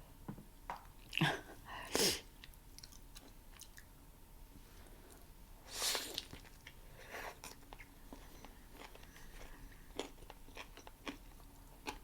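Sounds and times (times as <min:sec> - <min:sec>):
person chewing: 0:06.1 - 0:12.0.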